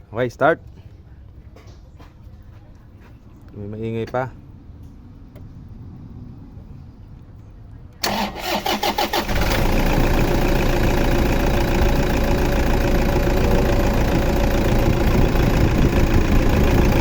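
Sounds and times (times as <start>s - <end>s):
diesel engine cranking and idling: 8.0s - 17.0s.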